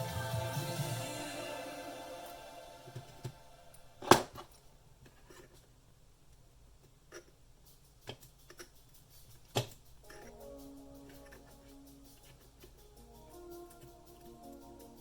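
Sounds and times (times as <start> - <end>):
laptop parts and tools clicking: 6.8 - 14.5.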